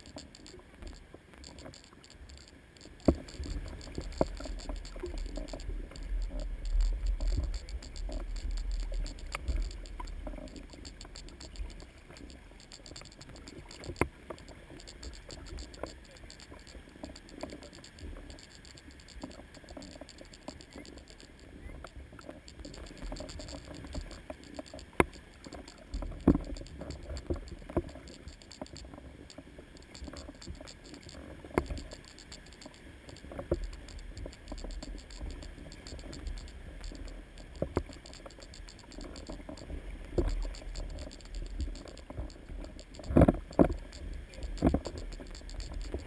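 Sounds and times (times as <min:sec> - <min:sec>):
wind rumbling on microphone: 0:02.9 - 0:46.0.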